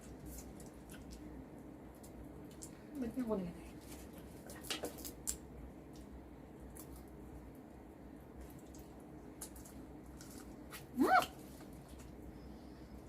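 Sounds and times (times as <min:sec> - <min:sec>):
wet squishing of meat: 0:00.0 - 0:02.8, 0:08.3 - 0:12.2.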